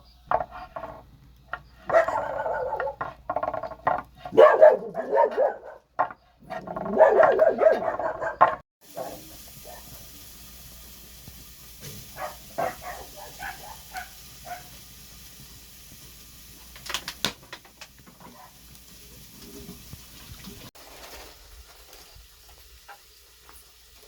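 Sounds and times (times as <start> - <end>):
dog barking and whining: 1.8 - 3.1, 4.2 - 9.9, 12.1 - 14.7
faint steady hiss: 8.8 - 24.0.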